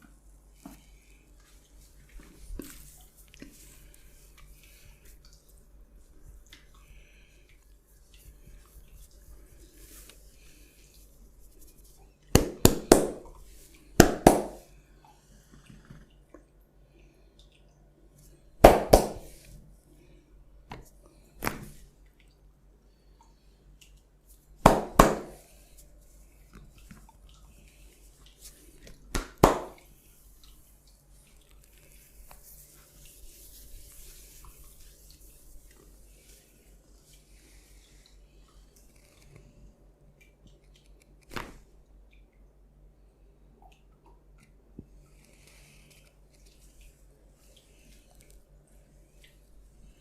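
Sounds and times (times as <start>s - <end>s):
hands smacking skin: 12.3s - 13.3s, 14.0s - 14.6s, 18.6s - 19.4s, 21.4s - 21.8s, 24.6s - 25.4s, 29.1s - 29.8s.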